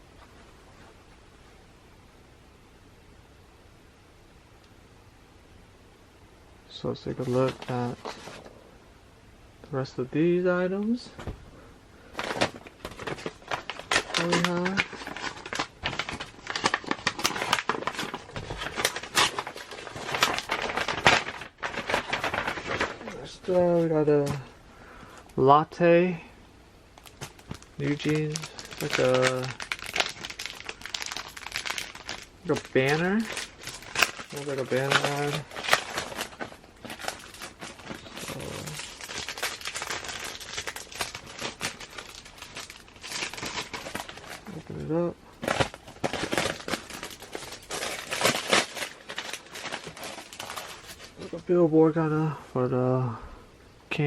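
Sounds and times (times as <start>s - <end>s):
hands rustling plastic packaging: 7.0s - 8.6s, 10.9s - 25.4s, 27.0s - 51.7s.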